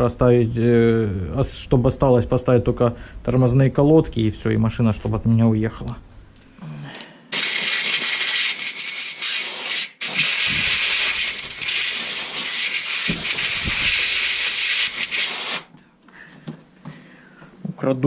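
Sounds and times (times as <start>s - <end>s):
pressurised jet hissing: 7.3s - 15.7s.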